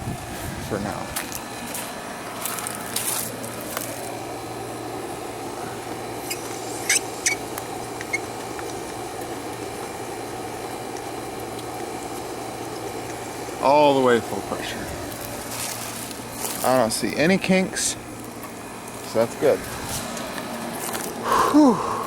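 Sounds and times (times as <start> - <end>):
water hissing through hose: 6.2 - 17.9
tap handle squeaks and clicks: 6.3 - 7.4.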